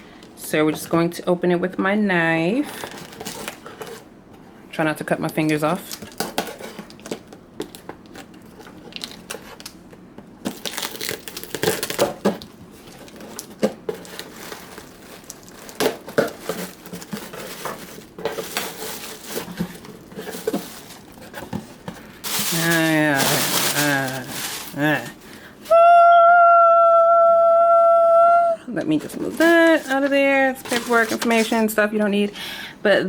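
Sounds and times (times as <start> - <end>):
cardboard box scraping and rustling: 12.8 - 25.1, 29.0 - 31.7.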